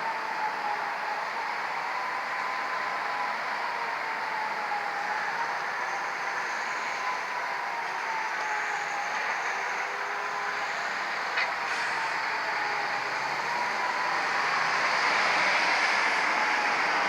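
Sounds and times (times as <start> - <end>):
distant wavering siren: 0.0 - 17.0
road traffic noise: 3.0 - 17.0.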